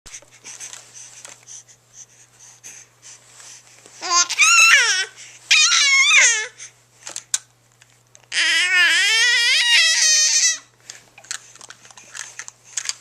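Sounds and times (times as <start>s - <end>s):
baby making high-pitched noises: 4.0s - 6.6s, 8.3s - 10.7s.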